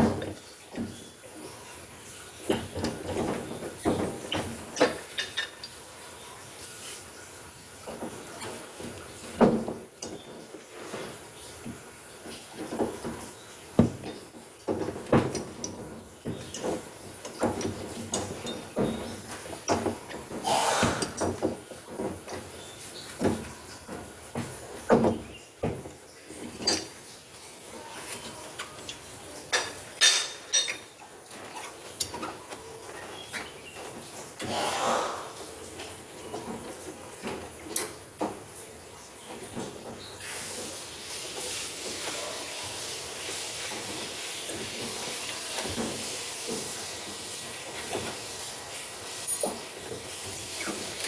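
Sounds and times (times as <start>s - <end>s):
parts knocking and clattering: 0.0s - 5.9s, 7.8s - 27.1s, 29.5s - 34.3s.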